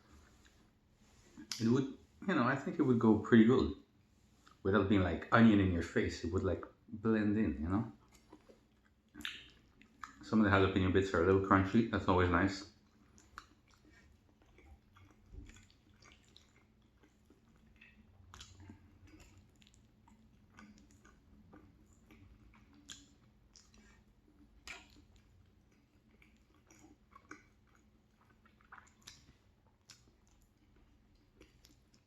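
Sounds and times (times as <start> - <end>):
close-miked chewing: 7.9 - 10.3, 12.6 - 32.0
sharp mouth clicks: 9.2 - 10.2.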